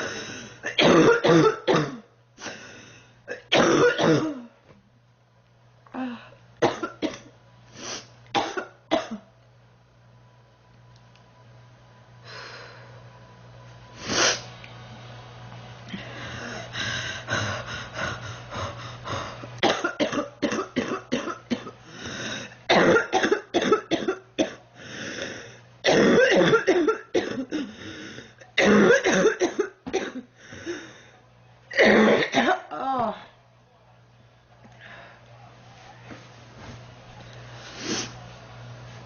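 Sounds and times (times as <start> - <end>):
girl coughing: 0.6 - 2.0, 3.3 - 4.5, 6.6 - 7.3, 8.4 - 9.2, 19.6 - 21.8, 22.7 - 24.6, 25.9 - 27.7, 28.6 - 30.3, 31.7 - 33.2.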